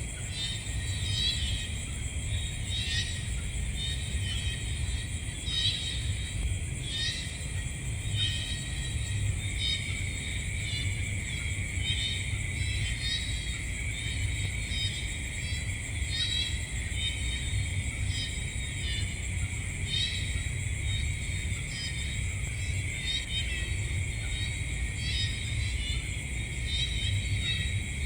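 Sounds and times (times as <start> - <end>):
insects high-pitched drone: 0.0 - 28.0
insect chirping calls: 0.1 - 28.0.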